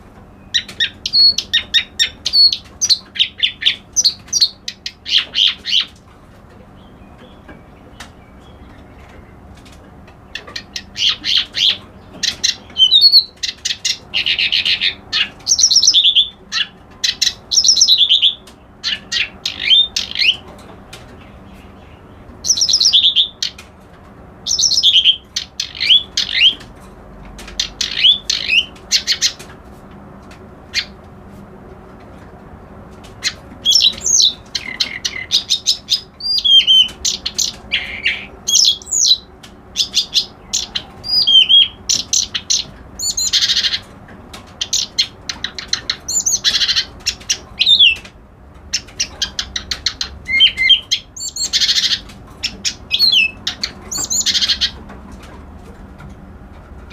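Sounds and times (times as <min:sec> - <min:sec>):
warbler singing chattering phrases: 0:00.4 - 0:06.0, 0:10.2 - 0:23.6, 0:24.4 - 0:26.6, 0:27.4 - 0:29.5, 0:30.7 - 0:31.0, 0:33.2 - 0:48.1, 0:48.7 - 0:54.8.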